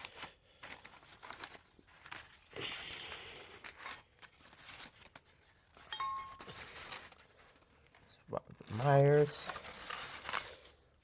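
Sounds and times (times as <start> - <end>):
packing material crinkling: 0.0 - 11.0.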